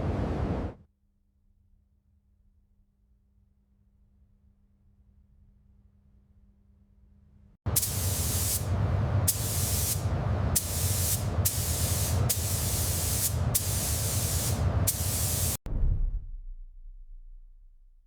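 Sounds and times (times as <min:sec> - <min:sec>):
high-pressure spray hissing: 0:07.7 - 0:15.6
low rumble: 0:08.6 - 0:12.3, 0:15.6 - 0:18.0.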